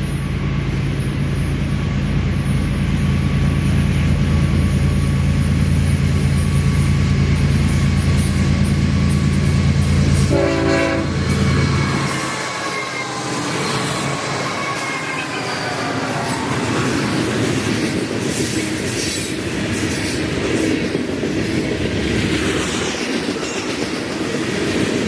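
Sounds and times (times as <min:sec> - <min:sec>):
diesel train rumbling: 0:00.0 - 0:25.0
train horn blast: 0:10.1 - 0:13.6.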